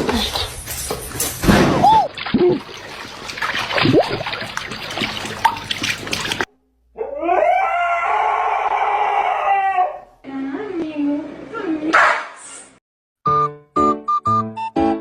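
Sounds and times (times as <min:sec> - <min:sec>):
dog howling: 0:07.0 - 0:10.1.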